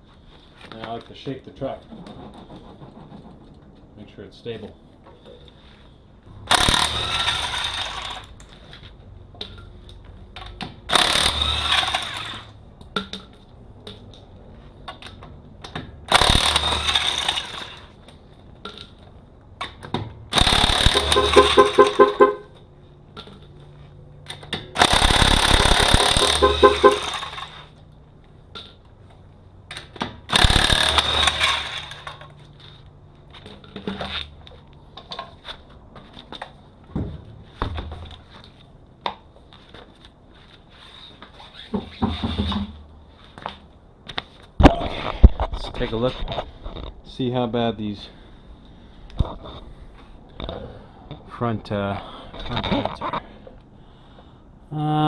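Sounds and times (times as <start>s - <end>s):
impact wrench hammering rattle: 16.1s - 17.9s, 20.3s - 22.6s, 24.8s - 27.7s, 30.3s - 32.3s.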